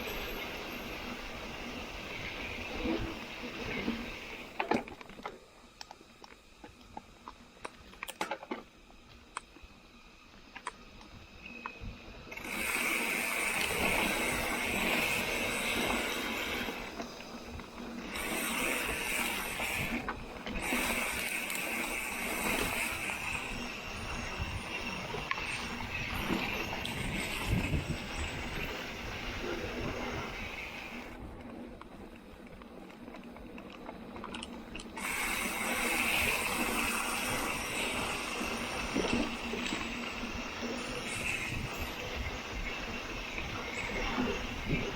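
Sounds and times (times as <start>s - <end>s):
bicycle freehub buzzing: 11.5s - 31.2s, 34.2s - 44.9s
tyre and trail rumble: 12.2s - 44.9s.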